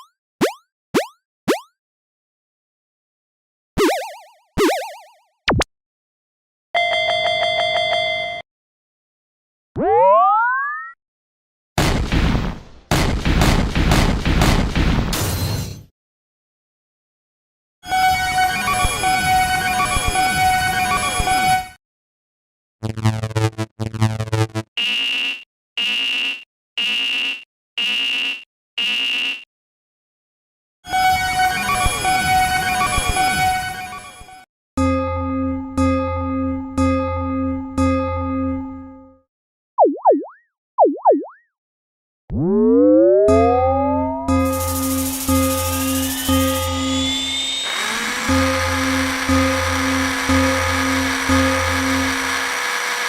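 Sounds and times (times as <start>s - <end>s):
wobbling boing: 9.8s - 11.0s, 39.8s - 41.5s, 42.3s - 44.5s
electronic buzzer warning tone: 17.9s - 21.8s, 22.8s - 29.5s, 43.3s - 53.0s
pulsed electronic bell tone: 31.1s - 39.2s, 42.6s - 52.4s
swooping bloop: 39.8s - 41.5s, 42.3s - 47.3s.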